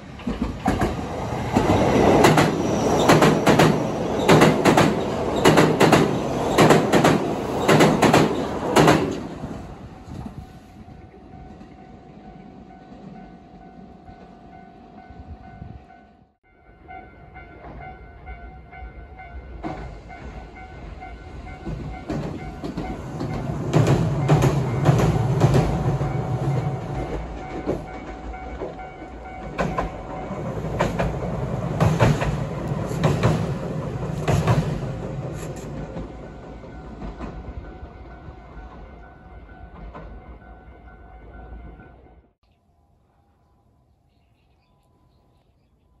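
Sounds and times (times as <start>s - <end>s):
train wheels clickety-clack: 0.0s - 9.6s, 19.6s - 38.0s, 39.7s - 40.2s.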